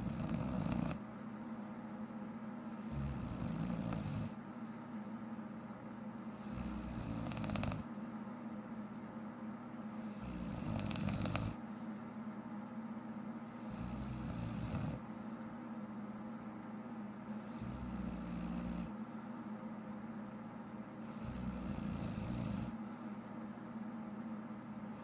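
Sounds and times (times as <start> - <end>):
woman snoring: 0.0 - 1.0, 2.8 - 4.4, 6.4 - 7.9, 10.0 - 11.6, 13.6 - 15.0, 17.4 - 18.9, 21.1 - 22.8.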